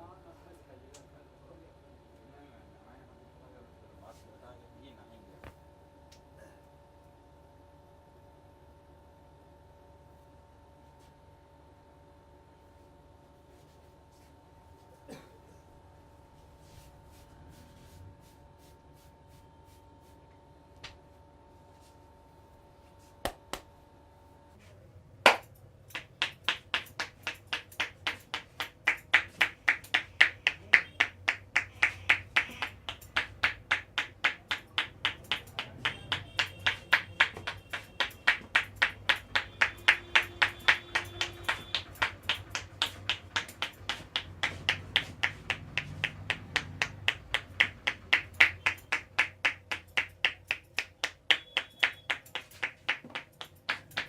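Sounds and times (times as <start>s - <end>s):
hands slapping skin: 25.3s - 54.0s.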